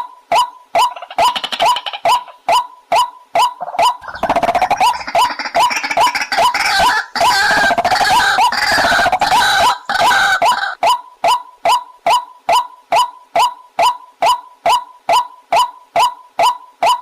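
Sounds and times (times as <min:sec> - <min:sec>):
waterhen kook calls: 0:00.8 - 0:10.8
dense croaking bird calls: 0:03.5 - 0:10.8.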